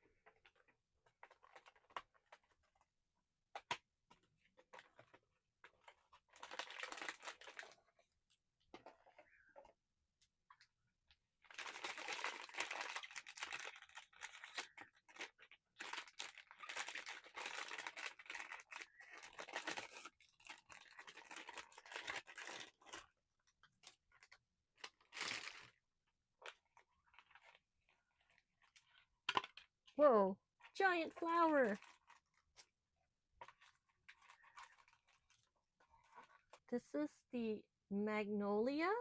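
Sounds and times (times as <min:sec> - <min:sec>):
packaging tearing and rustling: 0:01.1 - 0:02.8, 0:04.7 - 0:07.9, 0:11.4 - 0:25.8, 0:31.5 - 0:32.7, 0:33.4 - 0:36.6.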